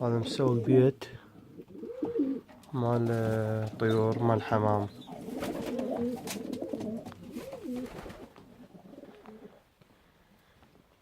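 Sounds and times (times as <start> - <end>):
pigeons cooing: 1.4 - 2.7, 4.9 - 9.6.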